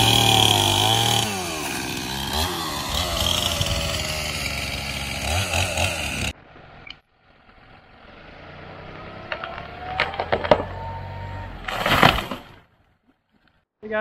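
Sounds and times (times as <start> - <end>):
chainsaw revving: 0.0 - 6.4.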